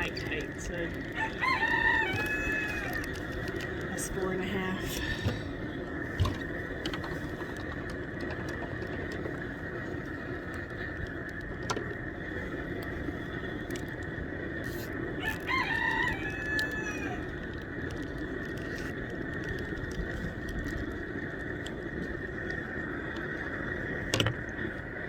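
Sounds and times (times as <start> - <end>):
steady background hum: 0.0 - 25.0
rooster crowing: 1.1 - 3.4, 15.2 - 17.4.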